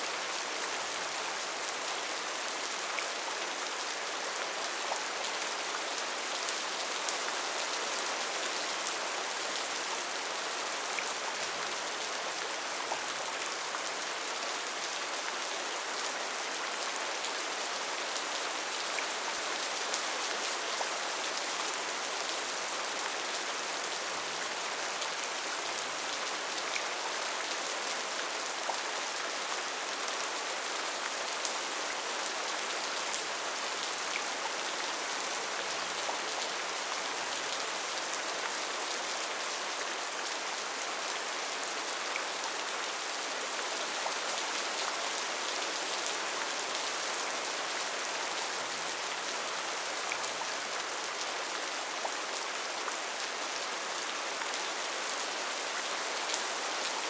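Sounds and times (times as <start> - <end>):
rain on a tin roof: 0.0 - 57.0.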